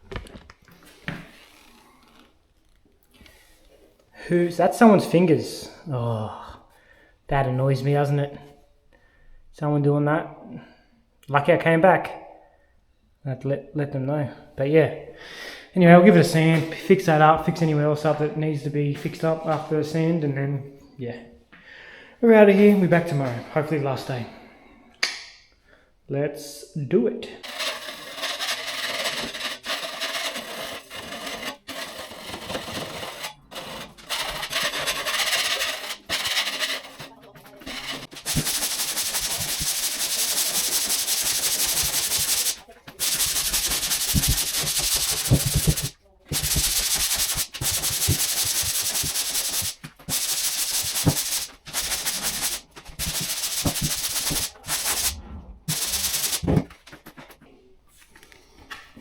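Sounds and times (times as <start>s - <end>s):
sanding plaster on a wall: 27.4s - 56.6s.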